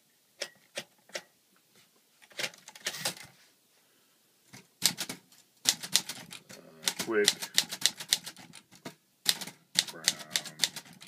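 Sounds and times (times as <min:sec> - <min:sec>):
typewriter mechanism clicking: 0:09.3 - 0:11.0.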